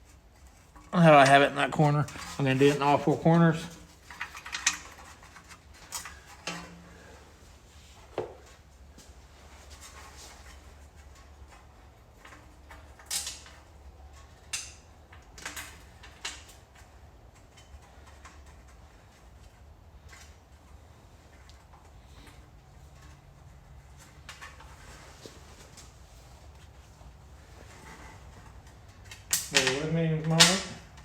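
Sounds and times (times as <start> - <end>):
metal bolts clinking: 0.6 - 6.8.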